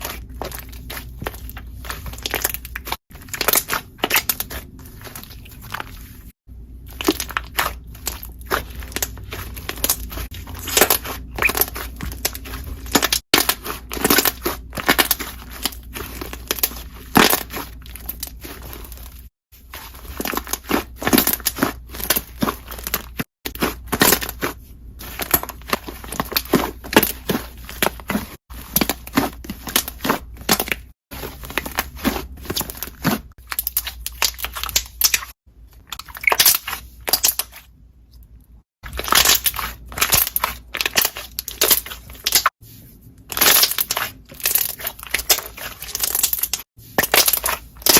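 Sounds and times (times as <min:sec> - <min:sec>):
slime squeezed with bubbles popping: 0:00.0 - 0:05.8, 0:06.9 - 0:19.0, 0:35.9 - 0:37.6.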